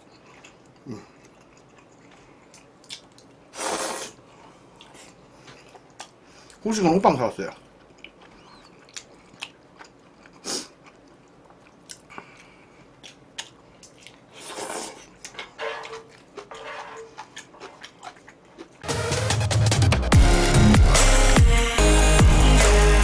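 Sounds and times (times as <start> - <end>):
person chewing noodles: 0.0 - 6.6, 7.6 - 18.9
electronic dance music: 18.8 - 23.0.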